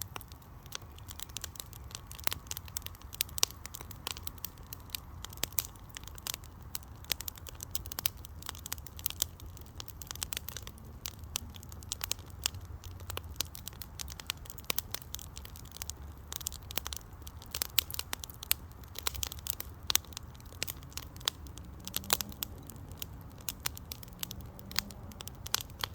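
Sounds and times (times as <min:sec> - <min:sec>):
low rumble of flames: 0:00.0 - 0:25.9
wood fire crackling and popping: 0:00.0 - 0:25.9.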